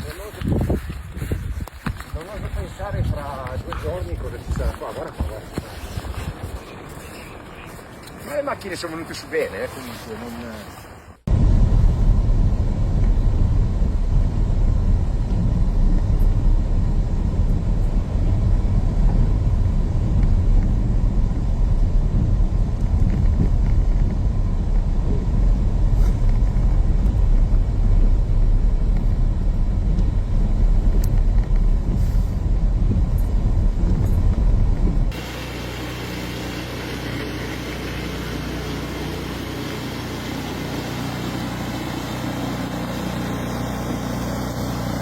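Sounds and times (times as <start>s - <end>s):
loud low rumble: 11.3s - 35.3s.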